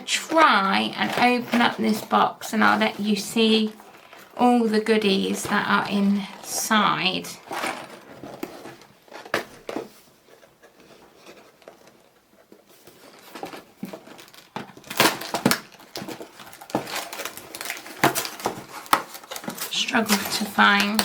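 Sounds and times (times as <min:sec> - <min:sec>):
scrapes clicks and crinkles of packaging: 0:05.0 - 0:21.0.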